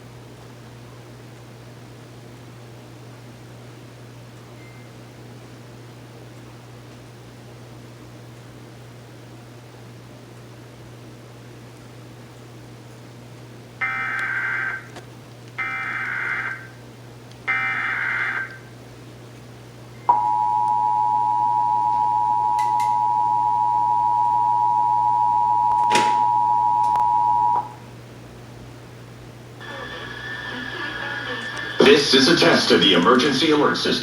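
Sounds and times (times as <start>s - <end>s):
two-tone attention signal: 20.1s - 27.8s
digital data bursts: 29.6s - 34.0s.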